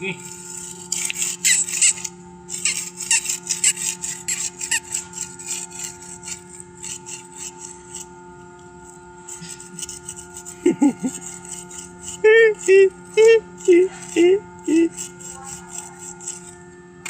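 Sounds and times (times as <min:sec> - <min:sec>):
steady electrical hum: 0:00.0 - 0:17.0
quick scratching strokes: 0:00.2 - 0:08.1, 0:14.0 - 0:16.6.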